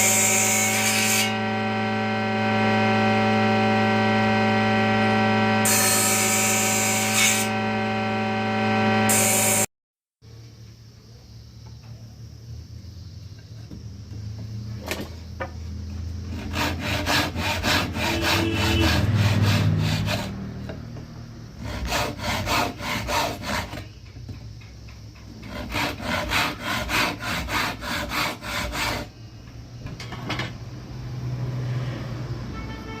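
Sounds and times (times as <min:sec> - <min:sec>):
hand tool rubbing on wood: 0:16.3 - 0:20.4, 0:25.4 - 0:29.1.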